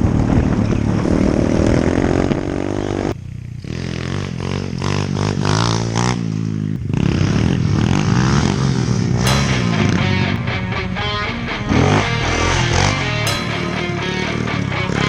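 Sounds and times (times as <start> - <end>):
dirt bike engine revving: 1.0 - 10.3.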